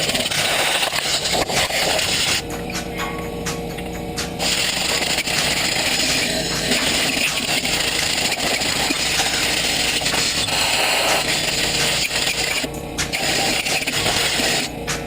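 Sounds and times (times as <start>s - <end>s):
power tool running: 0.0s - 2.8s, 3.8s - 15.0s.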